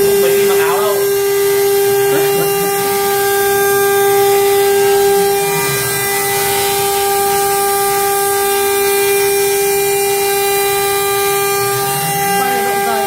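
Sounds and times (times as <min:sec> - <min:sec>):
router spindle high whine: 0:00.0 - 0:13.0.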